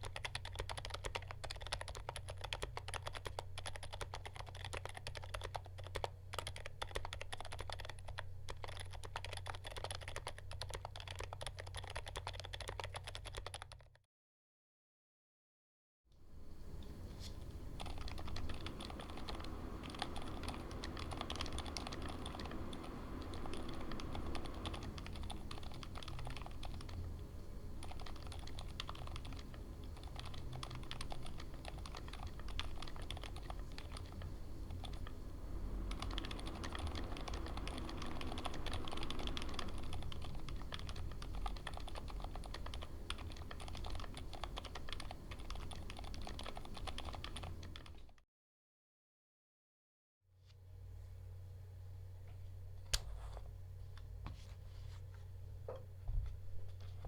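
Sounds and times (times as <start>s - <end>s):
typing on mechanical keyboard: 0.0s - 14.0s, 17.2s - 35.2s, 35.8s - 48.2s.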